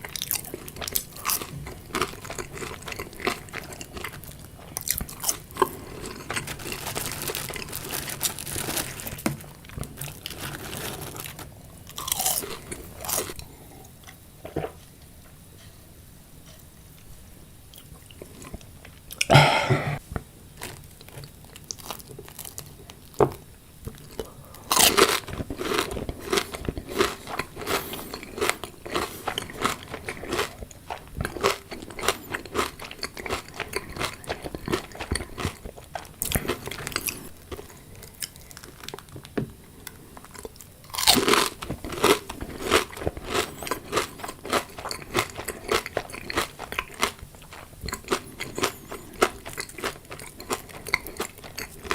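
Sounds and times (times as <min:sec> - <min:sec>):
crisp chewing crunches: 0:00.0 - 0:13.6, 0:20.6 - 0:51.9
person biting crunchy food: 0:11.9 - 0:13.4, 0:24.1 - 0:37.4, 0:40.8 - 0:47.2.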